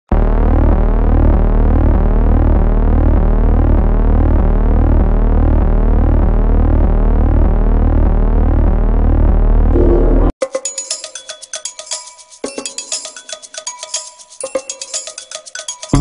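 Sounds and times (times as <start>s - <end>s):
synthesized electronic drone: 0.1s - 10.4s.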